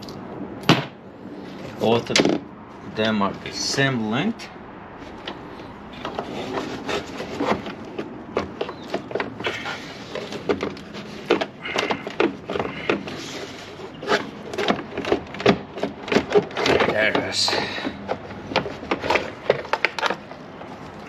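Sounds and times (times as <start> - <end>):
parts knocking and clicking: 1.6 - 2.5, 5.1 - 21.0.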